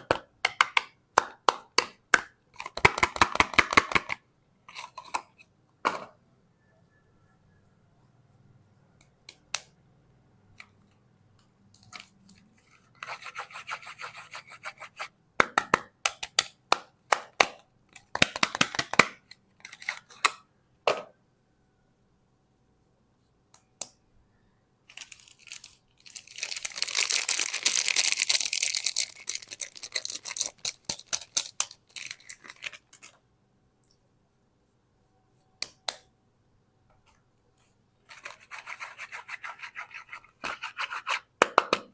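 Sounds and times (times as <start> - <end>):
packaging clicks: 24.9 - 33.1
packaging crinkling and rustling: 24.9 - 33.2.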